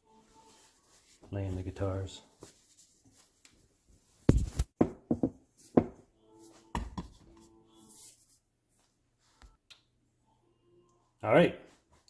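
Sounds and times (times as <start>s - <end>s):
dough thumping on a counter: 4.3s - 6.0s.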